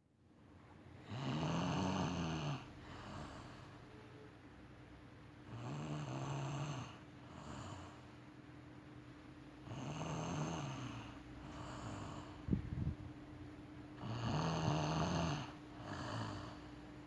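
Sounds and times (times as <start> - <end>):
woman snoring: 1.0 - 3.6, 5.5 - 8.0, 9.6 - 12.5, 14.0 - 16.8
faint breath: 2.8 - 4.2, 10.8 - 13.0, 15.7 - 17.0.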